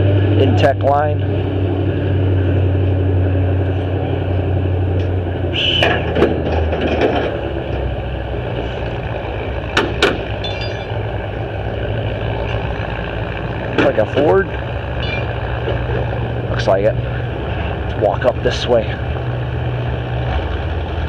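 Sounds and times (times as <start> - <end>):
vehicle engine idling: 0.0 - 21.0
high squeal: 5.5 - 6.1, 15.0 - 15.4
sharp knocks: 9.8 - 10.9.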